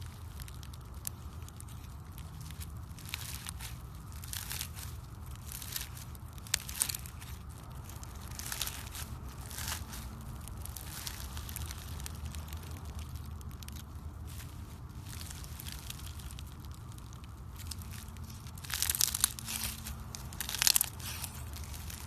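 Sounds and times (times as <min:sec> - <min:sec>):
crunchy slime squeezed by hand: 0:00.0 - 0:22.0.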